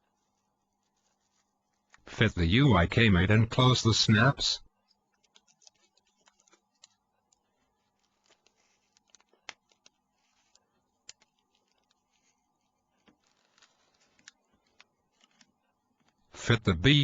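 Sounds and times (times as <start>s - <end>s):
plastic phone parts clicking: 5.1s - 7.4s.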